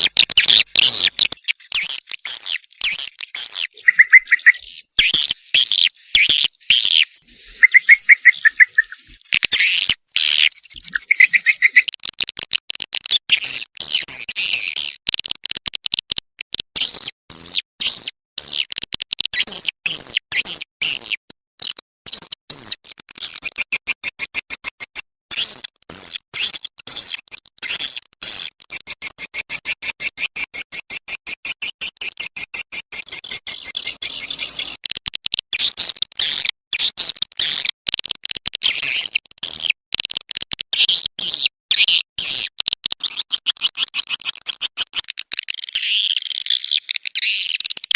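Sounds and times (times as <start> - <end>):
high-pitched bird chirps: 0.0 - 11.9, 43.0 - 47.9.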